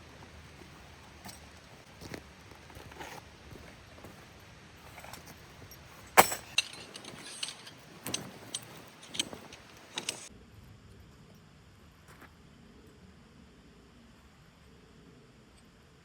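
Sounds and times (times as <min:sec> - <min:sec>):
hard objects clinking and knocking: 0:04.9 - 0:10.3.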